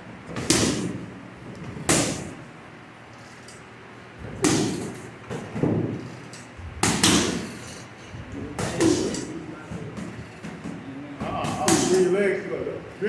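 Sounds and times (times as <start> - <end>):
punches on heavy bag: 0.4 - 1.1, 4.2 - 6.0.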